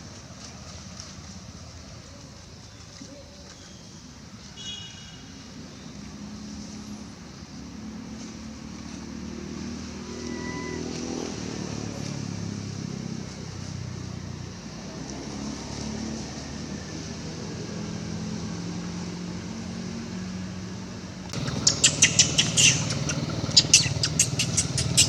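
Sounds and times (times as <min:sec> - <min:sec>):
vehicle engine running: 0:21.3 - 0:25.0.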